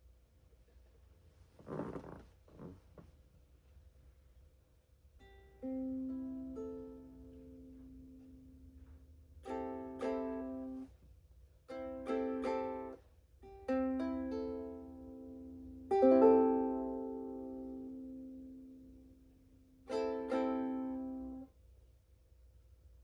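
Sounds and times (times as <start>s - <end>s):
ukulele chords strummed: 5.2s - 11.0s, 11.6s - 21.5s.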